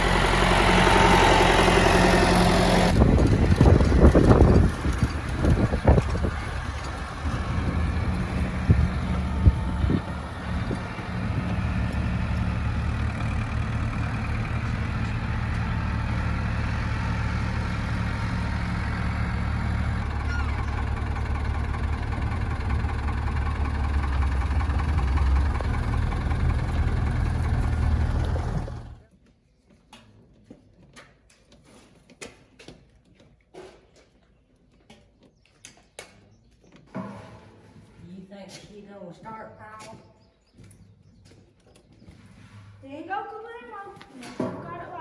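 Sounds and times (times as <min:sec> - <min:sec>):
engine running steadily: 0:00.0 - 0:29.0.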